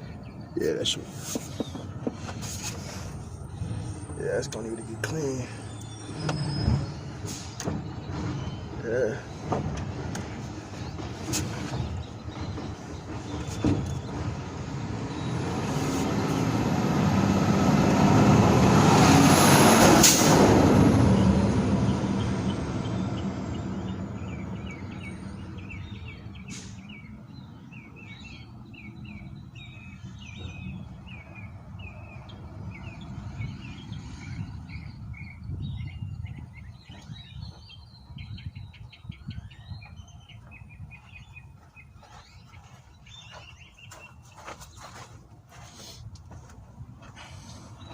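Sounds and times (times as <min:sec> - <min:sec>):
birds chirping: 0:00.0 - 0:18.9, 0:21.1 - 0:47.9
vehicle passing: 0:14.0 - 0:26.1.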